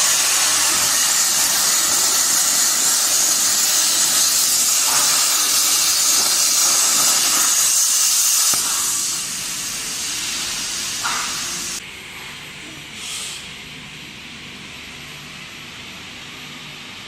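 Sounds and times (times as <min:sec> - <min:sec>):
plasma cutting torch hissing: 0:00.0 - 0:11.8.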